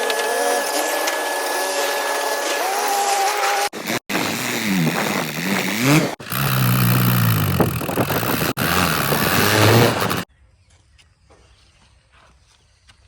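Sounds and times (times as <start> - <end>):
vehicle engines revving: 3.3 - 10.3.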